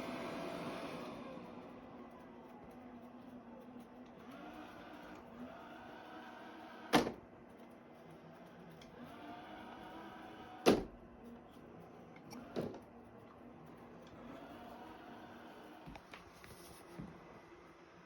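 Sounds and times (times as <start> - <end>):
robot vacuum cleaner running: 0.0 - 2.2.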